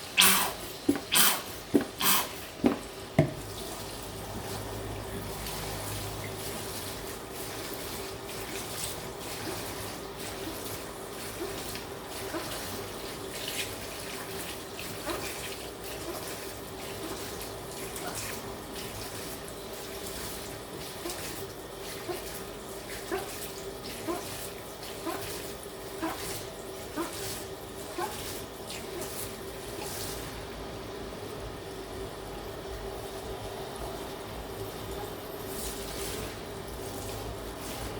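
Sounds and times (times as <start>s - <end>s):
tap water running into sink: 0.0s - 30.3s.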